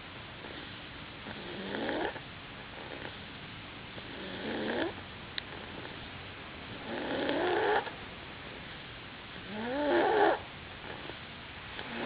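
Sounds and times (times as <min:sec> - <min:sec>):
squeaky snoring: 0:01.3 - 0:02.2, 0:04.1 - 0:05.0, 0:06.8 - 0:07.9, 0:09.5 - 0:11.1.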